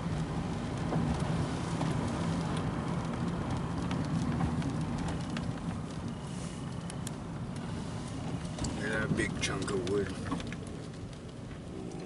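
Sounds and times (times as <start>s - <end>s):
car engine hum: 0.0s - 12.0s
road noise: 0.0s - 12.0s
light ticks: 0.6s - 7.7s, 8.4s - 11.3s.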